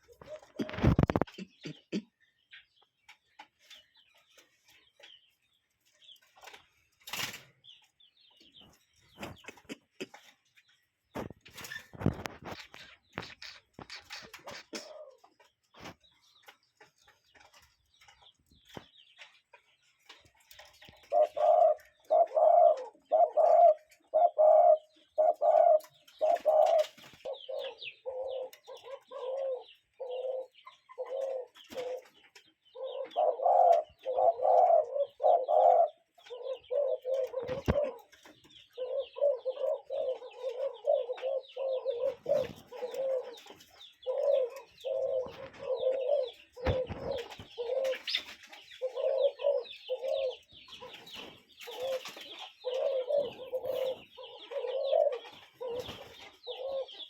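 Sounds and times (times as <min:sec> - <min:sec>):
cuckoo calling: 0:00.0 - 0:02.2, 0:11.6 - 0:15.5, 0:20.9 - 0:57.0
faint bird chirps: 0:11.2 - 0:16.6.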